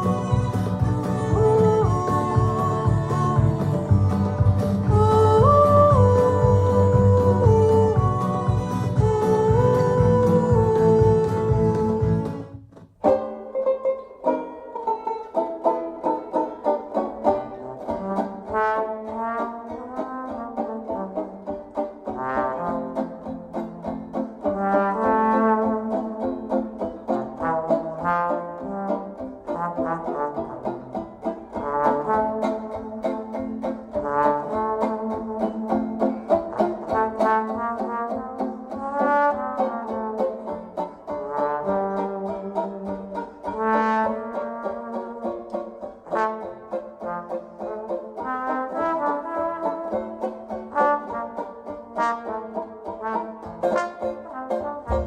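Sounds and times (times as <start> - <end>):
banjo accompaniment: 0.0 - 55.0
trombone melody: 0.0 - 55.0.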